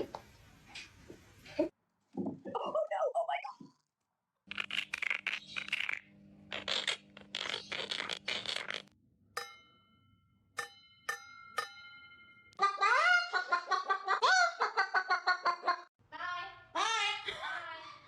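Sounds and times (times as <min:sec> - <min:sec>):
sharp metallic clinks ringing: 0:09.4 - 0:12.6.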